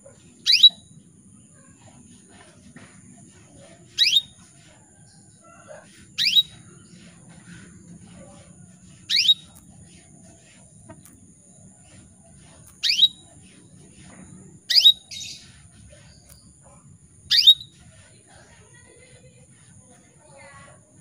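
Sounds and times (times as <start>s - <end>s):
canary chirps sweeping upward: 0.2s - 1.0s, 3.9s - 4.5s, 5.9s - 7.2s, 8.8s - 11.0s, 12.6s - 13.9s, 14.6s - 16.5s, 17.2s - 18.1s.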